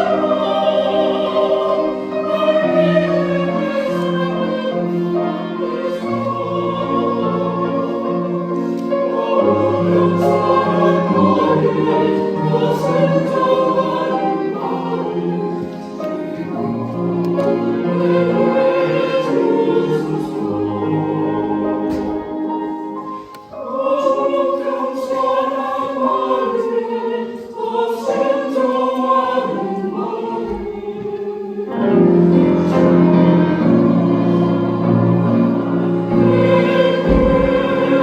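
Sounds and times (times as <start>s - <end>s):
church choir singing: 0.0s - 38.0s.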